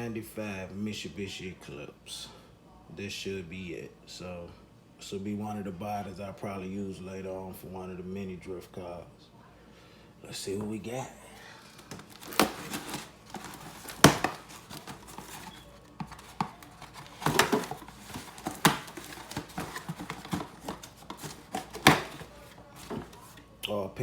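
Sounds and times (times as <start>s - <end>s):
cardboard scraping and handling: 11.7s - 23.4s.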